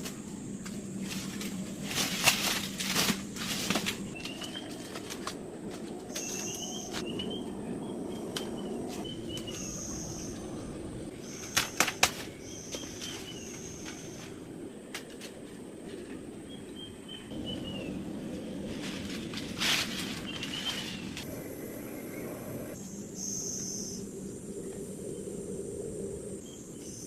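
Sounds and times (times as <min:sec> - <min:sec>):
clatters and rustling: 0:00.0 - 0:07.0
bird calling: 0:06.1 - 0:14.4, 0:20.1 - 0:24.0.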